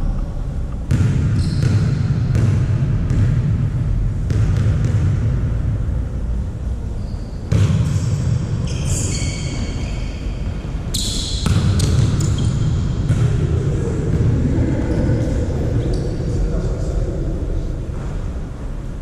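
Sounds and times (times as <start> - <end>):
short high shoe squeaks: 1.4 - 1.7, 7.0 - 7.5, 8.6 - 10.2, 10.9 - 12.6
steady low rumble: 1.9 - 7.0, 12.7 - 19.0.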